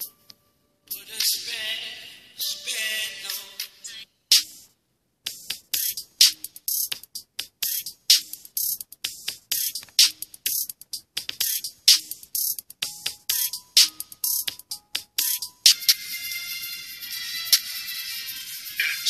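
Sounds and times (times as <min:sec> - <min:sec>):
hip-hop drum-machine beat: 0:00.9 - 0:01.6, 0:03.3 - 0:19.0.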